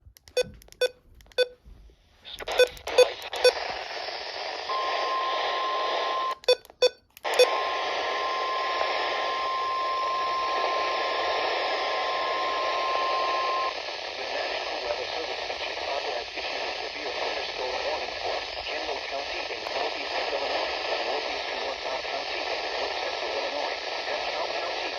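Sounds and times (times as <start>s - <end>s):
short beeps and clicks: 0.2s - 1.6s, 2.4s - 3.6s, 6.1s - 7.6s
radio static: 2.2s - 6.4s, 7.3s - 24.9s.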